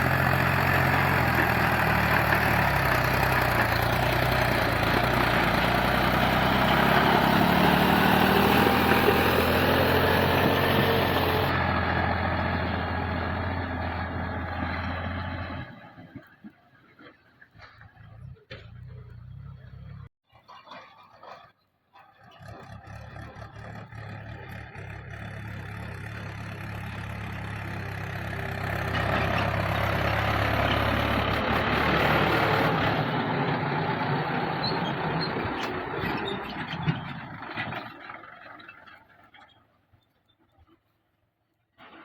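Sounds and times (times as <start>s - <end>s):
diesel engine running: 0.0s - 15.7s, 22.5s - 38.4s.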